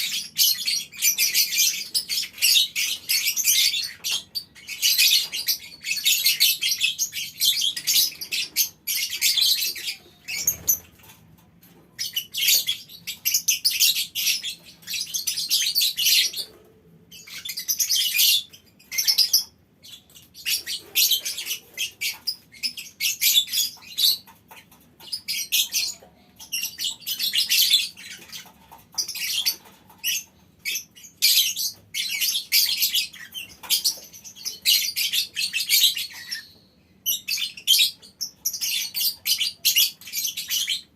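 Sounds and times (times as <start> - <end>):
lovebirds chattering trills: 0.0 - 11.2, 11.8 - 40.9.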